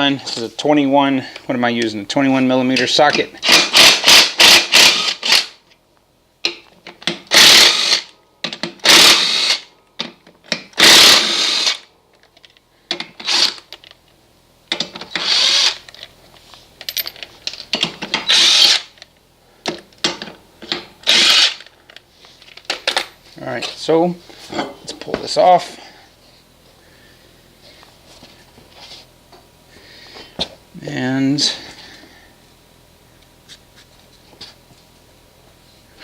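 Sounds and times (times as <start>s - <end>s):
impact gun bursts: 3.4s - 5.6s.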